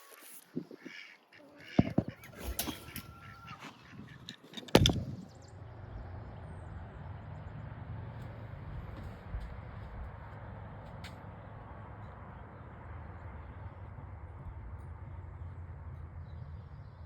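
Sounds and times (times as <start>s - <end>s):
chickens calling: 0.1s - 5.4s.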